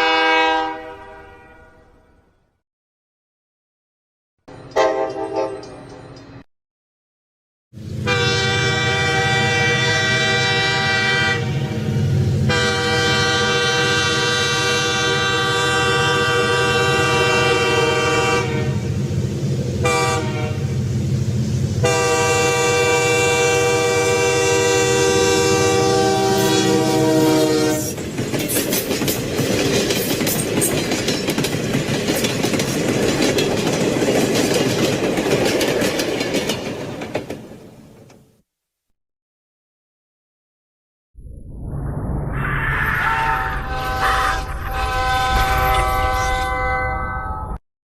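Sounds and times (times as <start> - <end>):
train horn blasts: 0.0 - 2.2, 4.7 - 5.7, 8.0 - 19.0, 19.8 - 20.8, 21.8 - 28.0, 43.1 - 47.3
wheels clacking over rail joints: 28.0 - 38.2.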